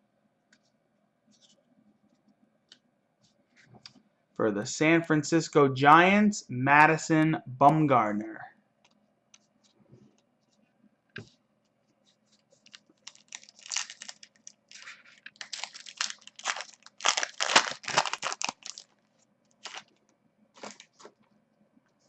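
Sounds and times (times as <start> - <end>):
foil wrapper tearing and crinkling: 12.6 - 19.0, 19.6 - 19.9.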